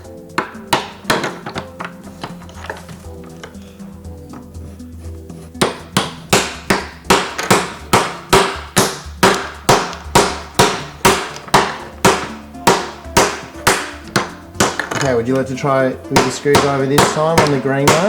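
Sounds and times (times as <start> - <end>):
toy hammer knocking on toy pieces: 0.4 - 1.9, 5.6 - 15.2, 16.2 - 18.0.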